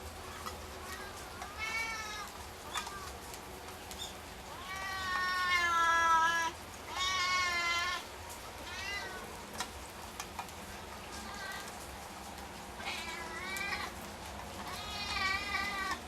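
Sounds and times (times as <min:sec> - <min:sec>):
cat meowing: 0:00.8 - 0:03.2, 0:04.5 - 0:08.0, 0:08.6 - 0:09.3, 0:12.8 - 0:14.0, 0:14.7 - 0:16.0.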